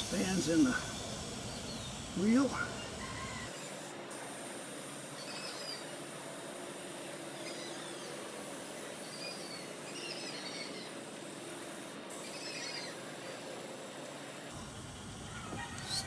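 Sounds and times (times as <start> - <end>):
air hissing out of tire: 0.0 - 11.4.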